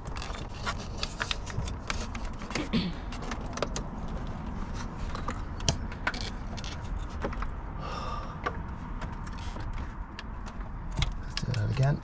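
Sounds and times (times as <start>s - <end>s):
tools and metal parts clicking: 0.0s - 7.6s.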